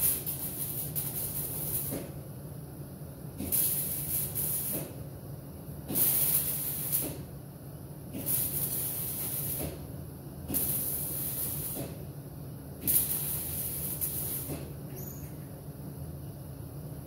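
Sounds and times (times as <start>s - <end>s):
welder hissing: 0.0s - 2.2s, 3.4s - 5.0s, 5.9s - 7.3s, 8.1s - 9.9s, 10.5s - 12.0s, 12.8s - 15.2s
steady low hum: 0.0s - 17.0s.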